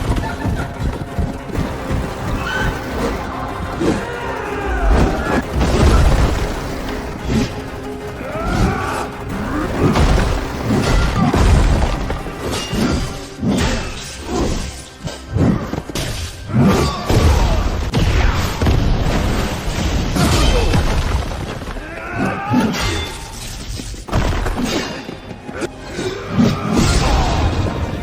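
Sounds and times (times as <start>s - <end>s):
crashes and shattering: 0.0s - 15.0s
music: 0.0s - 20.7s, 22.4s - 28.0s.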